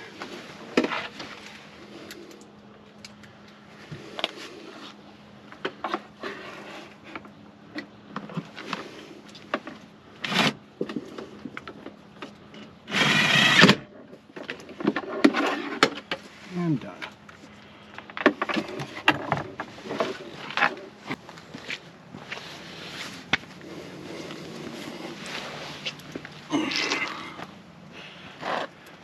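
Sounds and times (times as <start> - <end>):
electric drill driving screws: 12.9 - 13.8.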